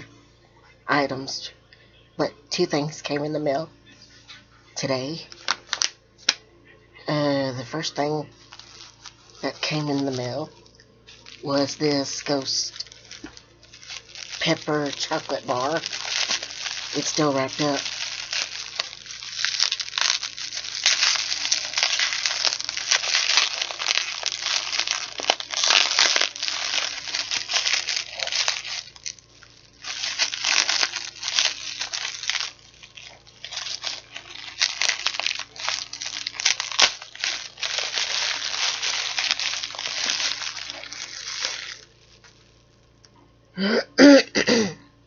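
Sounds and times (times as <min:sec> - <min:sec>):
wrapper crinkling and tearing: 0:04.8 - 0:06.0, 0:07.2 - 0:43.0.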